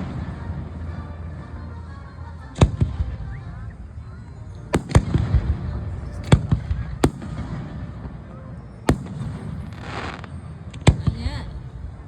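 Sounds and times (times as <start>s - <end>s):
fireworks bangs: 4.8s - 8.0s, 8.9s - 10.4s.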